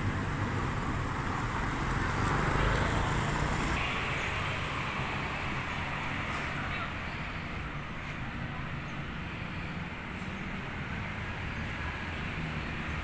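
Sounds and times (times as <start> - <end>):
road noise: 0.0 - 13.0
vehicle engine humming: 0.0 - 13.0.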